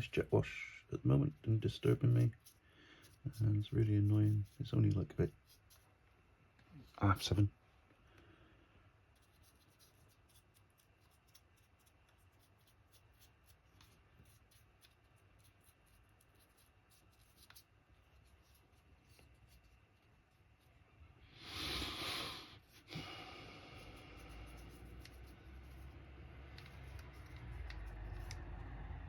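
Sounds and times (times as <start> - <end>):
paintbrush scratchy ticks: 1.4 - 5.9, 9.1 - 20.7, 23.7 - 28.6.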